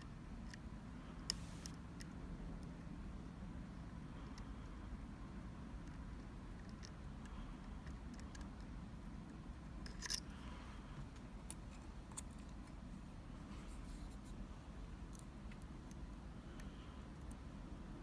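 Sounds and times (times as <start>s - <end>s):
low steady hum: 0.0s - 18.0s
lock pick clicking and scraping: 9.8s - 10.3s.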